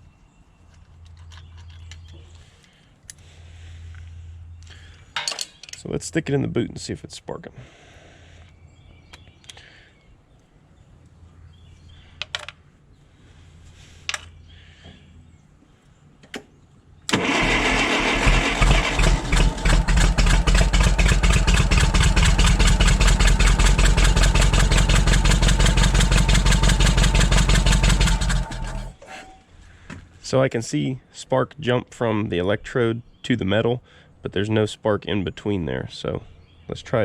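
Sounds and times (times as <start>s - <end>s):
engine turning over: 17.1s - 29.0s.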